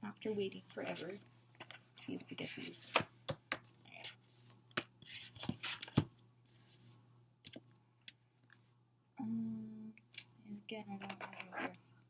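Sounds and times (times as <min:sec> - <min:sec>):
cards sliding and rubbing: 0:04.3 - 0:07.0.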